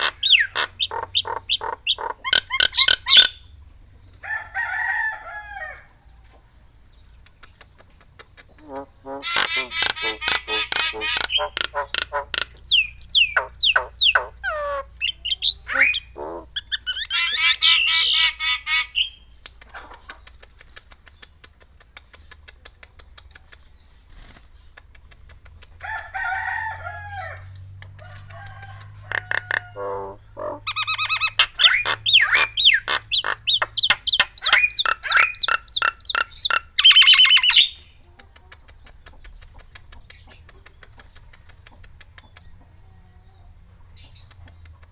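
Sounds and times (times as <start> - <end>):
myna whistles and calls: 8.3 - 19.2, 30.4 - 37.8
faint rapid clicking: 19.4 - 23.7.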